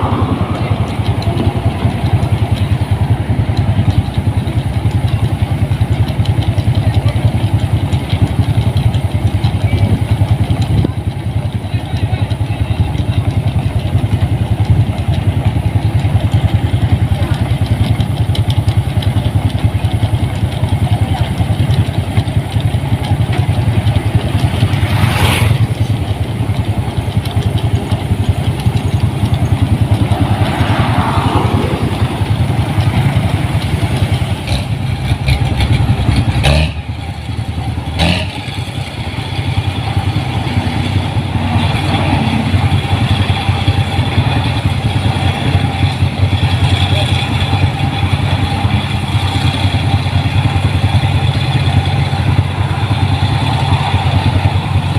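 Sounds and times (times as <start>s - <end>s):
combine harvester engine running: 0.0s - 54.9s.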